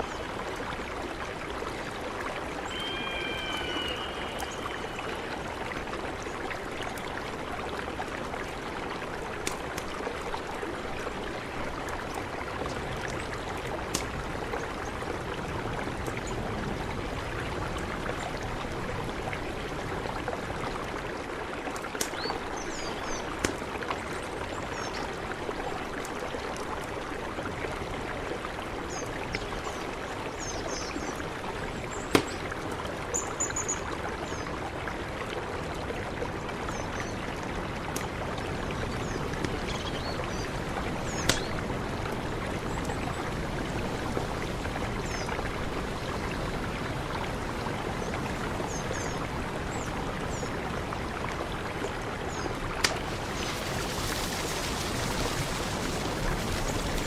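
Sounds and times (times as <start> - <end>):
mountain river rushing: 0.0 - 57.0
small water splashes: 0.0 - 57.0
whistled call: 2.6 - 5.3.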